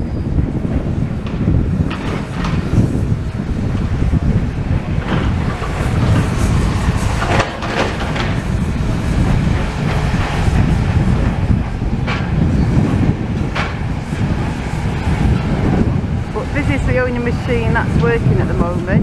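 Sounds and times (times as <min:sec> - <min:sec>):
demolition machine running: 0:00.0 - 0:19.0
wind buffeting microphone: 0:00.0 - 0:19.0
sharp knocks and clatters: 0:01.2 - 0:03.1, 0:04.9 - 0:14.3.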